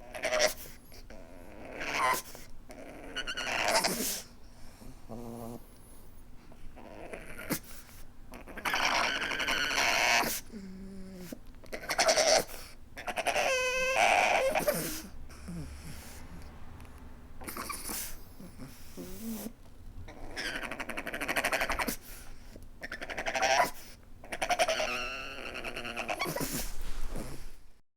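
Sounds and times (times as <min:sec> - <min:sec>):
dog whining and crying: 0:00.0 - 0:04.3, 0:08.4 - 0:16.5, 0:17.4 - 0:22.1, 0:22.8 - 0:27.5.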